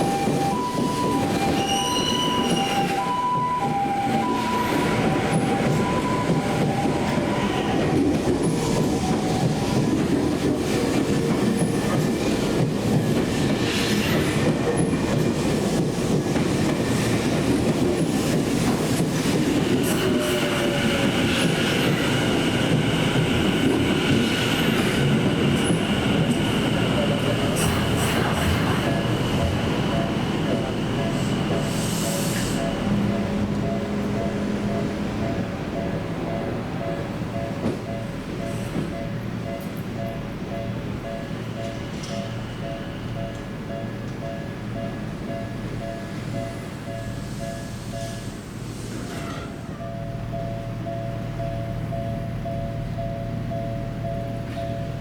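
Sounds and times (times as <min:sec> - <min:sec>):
level crossing alarm dings: 0:00.0 - 0:07.4, 0:28.8 - 0:48.3
train wheel-on-rail noise: 0:00.0 - 0:55.0
high wheel squeal: 0:00.9 - 0:03.0.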